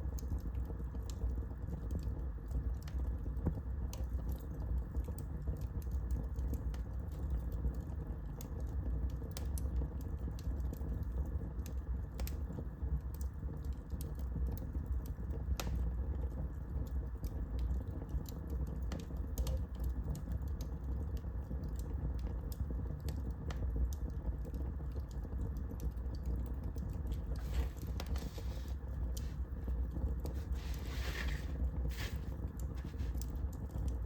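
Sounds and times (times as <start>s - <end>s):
wood fire crackling: 0.0s - 34.0s
soft hiss: 27.2s - 33.6s.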